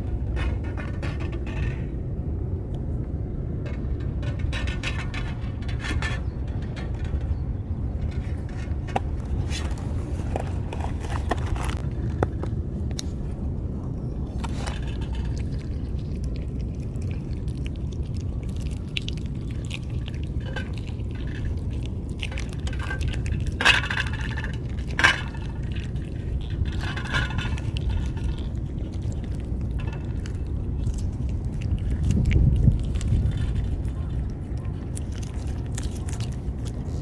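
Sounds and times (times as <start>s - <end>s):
low rumble: 0.0s - 37.0s.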